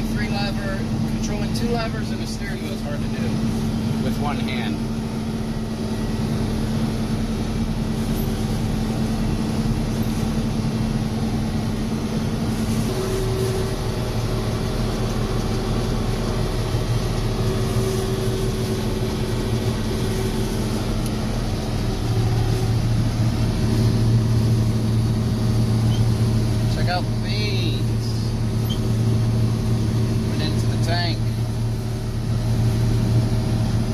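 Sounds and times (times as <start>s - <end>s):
combine harvester engine drone: 0.0s - 33.9s.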